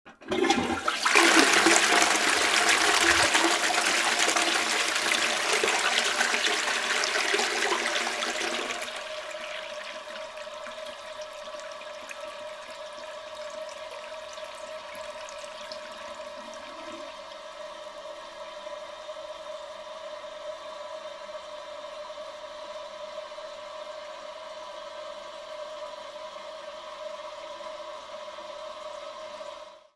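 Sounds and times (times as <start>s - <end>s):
toilet flushing: 0.1s - 18.7s.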